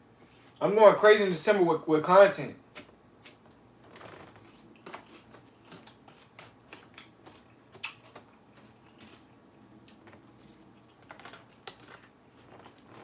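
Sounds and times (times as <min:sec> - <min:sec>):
person chewing lettuce: 0:02.8 - 0:13.0.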